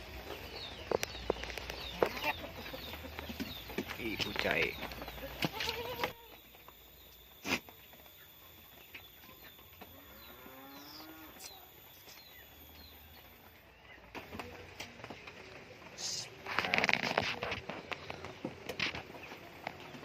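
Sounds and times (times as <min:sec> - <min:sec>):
goat bleating: 0:05.3 - 0:06.4.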